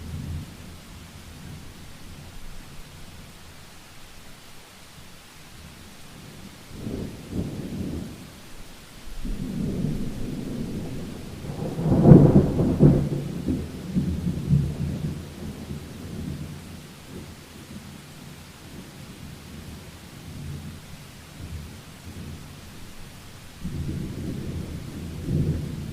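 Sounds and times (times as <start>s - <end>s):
heavy rain: 0.0s - 25.9s
rolling thunder: 9.1s - 16.6s, 23.6s - 25.9s.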